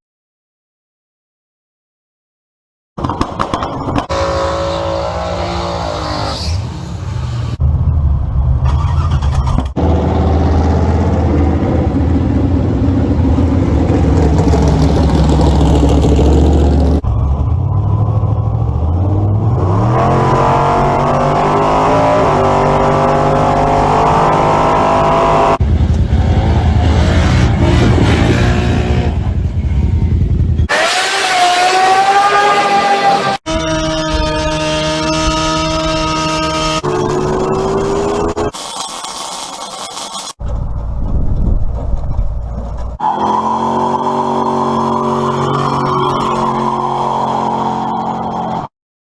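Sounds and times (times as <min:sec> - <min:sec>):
car engine revving: 0:04.1 - 0:38.5.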